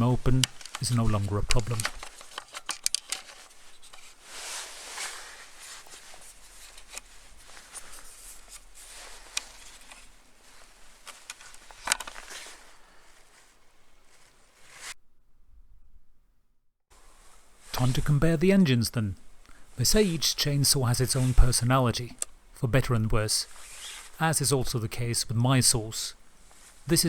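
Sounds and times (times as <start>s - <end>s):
hands scraping and rustling: 0.0s - 15.0s, 19.9s - 22.4s, 23.4s - 24.2s, 26.4s - 27.0s.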